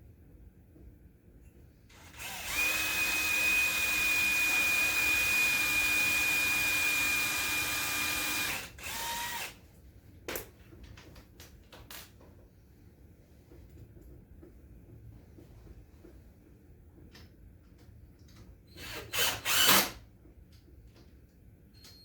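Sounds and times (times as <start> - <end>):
power drill whining: 1.9 - 9.6, 18.7 - 20.0.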